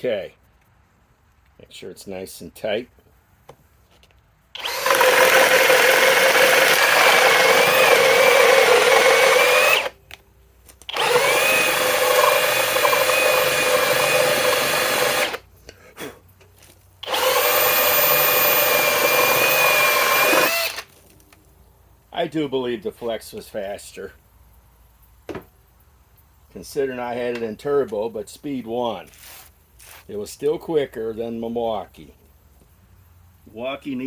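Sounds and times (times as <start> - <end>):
cordless hammer drill whining: 4.6 - 10.0, 10.9 - 15.4, 17.0 - 20.9.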